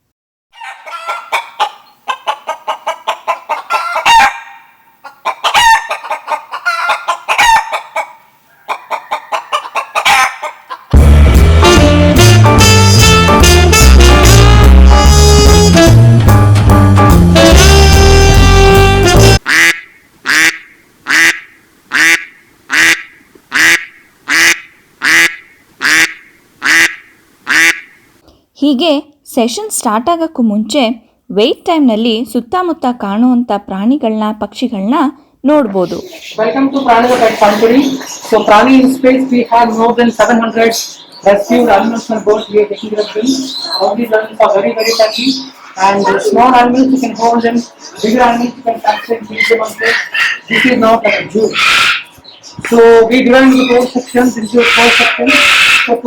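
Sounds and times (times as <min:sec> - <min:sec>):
drawn-out poultry calls: 0:00.5 - 0:16.4, 0:17.3 - 0:28.2, 0:35.7 - 0:56.0
chickens clucking: 0:00.6 - 0:11.1, 0:35.7 - 0:56.0
duck quacking: 0:00.6 - 0:16.4, 0:17.3 - 0:28.0, 0:48.0 - 0:52.2, 0:53.3 - 0:56.0.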